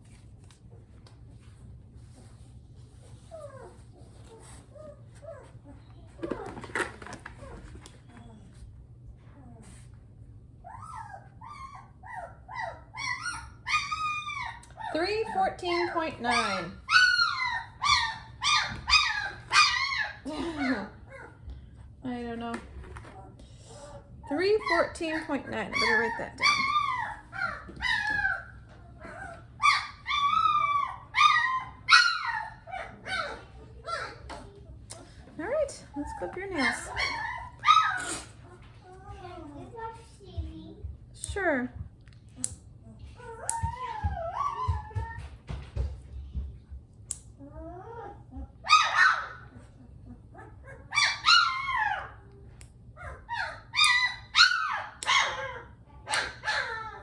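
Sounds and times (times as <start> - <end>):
puppy whining yelps: 10.6 - 21.4, 25.6 - 34.5, 36.1 - 38.3, 43.1 - 45.4, 47.4 - 52.4, 53.0 - 57.0.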